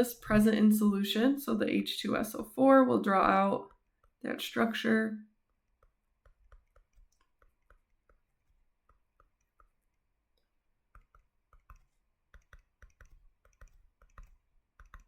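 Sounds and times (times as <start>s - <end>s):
faint computer clicking: 5.8s - 15.0s.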